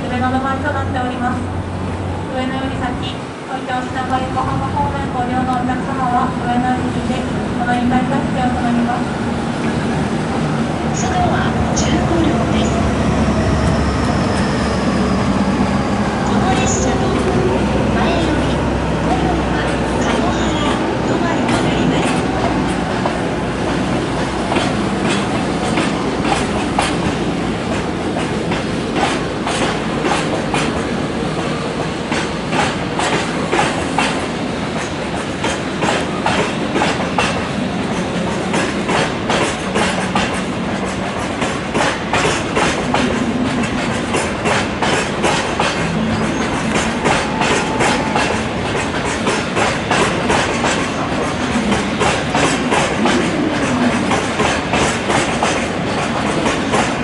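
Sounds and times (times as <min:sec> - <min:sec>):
train wheels clacking over rail joints: 0:21.4 - 0:57.0.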